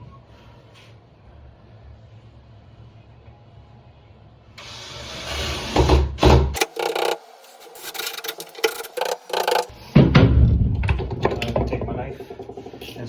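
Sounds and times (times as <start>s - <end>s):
handling knocks: 10.0s - 13.0s.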